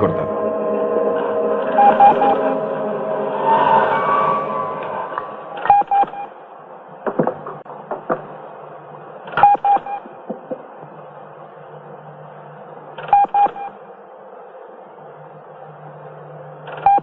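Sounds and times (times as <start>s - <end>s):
low steady hum: 0.0s - 16.7s
short electronic beeps: 1.8s - 2.5s, 5.6s - 6.3s, 9.4s - 10.0s, 13.1s - 13.8s
knocks: 7.0s - 8.3s.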